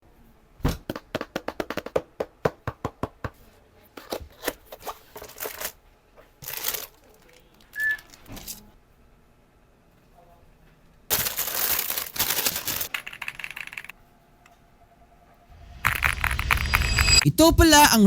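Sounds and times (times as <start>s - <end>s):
mechanical keyboard typing: 12.4s - 13.9s.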